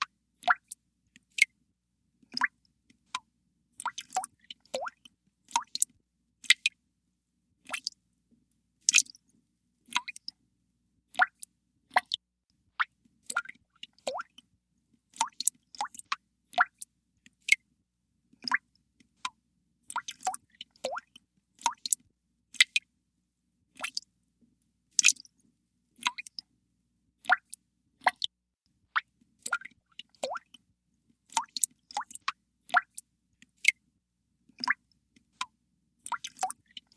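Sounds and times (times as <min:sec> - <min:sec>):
water dripping: 0:00.4 - 0:01.6, 0:02.2 - 0:06.8, 0:07.6 - 0:08.0, 0:08.8 - 0:09.2, 0:09.9 - 0:10.4, 0:11.1 - 0:12.2, 0:12.8 - 0:14.5, 0:15.1 - 0:17.6, 0:18.4 - 0:22.0, 0:23.8 - 0:24.1, 0:25.0 - 0:25.3, 0:26.0 - 0:26.5, 0:27.2 - 0:28.3, 0:29.0 - 0:30.7, 0:31.3 - 0:33.8, 0:34.6 - 0:36.9.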